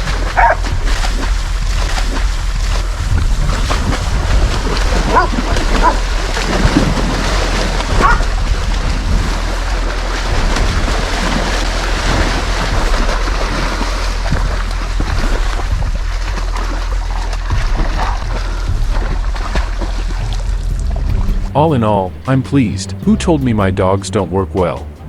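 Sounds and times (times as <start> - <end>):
rushing background noise: 0.0 - 25.0
dogs barking: 0.3 - 0.7, 5.0 - 6.2, 7.9 - 8.4.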